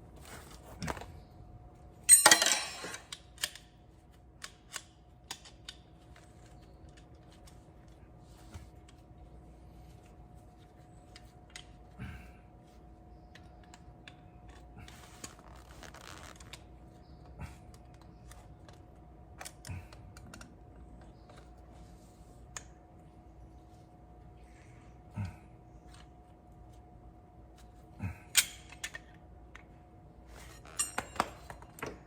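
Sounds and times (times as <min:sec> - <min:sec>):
faint hum: 0:00.0 - 0:32.0
hand tools clicking and knocking: 0:02.1 - 0:03.6, 0:30.6 - 0:32.0.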